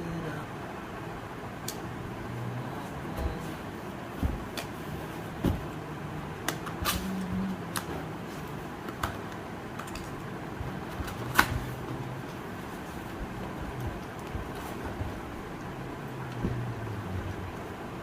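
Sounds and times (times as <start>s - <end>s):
steady low hum: 0.0s - 18.0s
objects being handled clicks: 8.9s - 10.2s.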